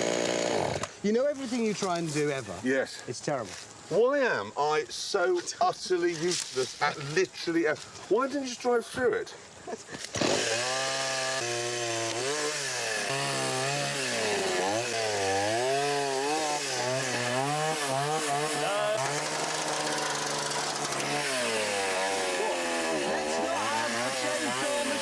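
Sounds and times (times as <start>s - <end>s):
chainsaw revving and cutting wood: 0.0s - 1.0s, 10.0s - 25.0s.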